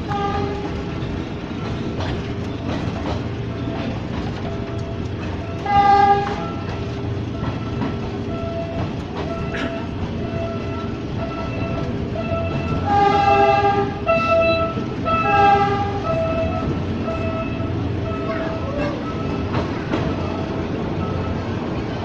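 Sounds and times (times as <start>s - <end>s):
train horn blasts: 0.0s - 0.8s, 4.8s - 6.8s, 7.6s - 19.4s
electric train rumbling: 0.0s - 22.0s.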